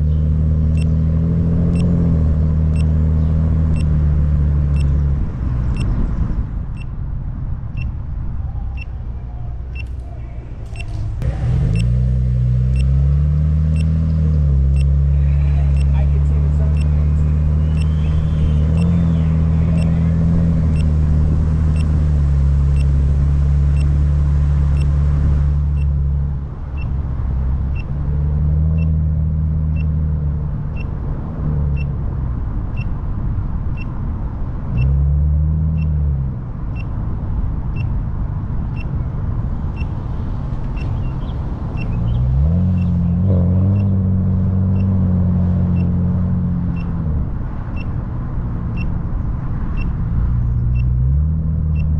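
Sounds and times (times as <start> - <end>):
car engine and road noise: 0.0 - 51.9.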